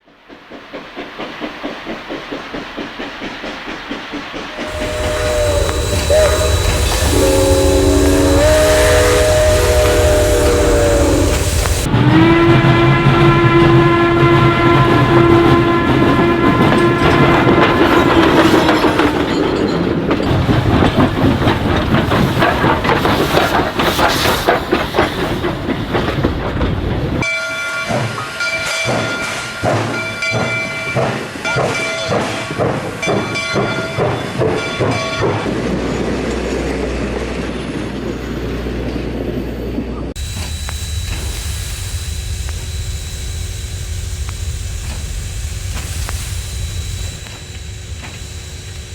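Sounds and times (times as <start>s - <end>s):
train wheels clattering on track: 0.1s - 11.9s
brief ringing tones: 4.6s - 11.9s, 40.2s - 48.9s
low steady rumble: 4.6s - 11.9s, 40.2s - 48.9s
train horn: 4.6s - 18.9s.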